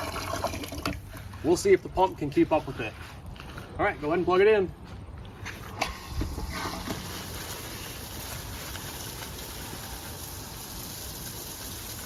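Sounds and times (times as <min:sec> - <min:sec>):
pump running water: 0:00.0 - 0:01.4, 0:05.8 - 0:12.0.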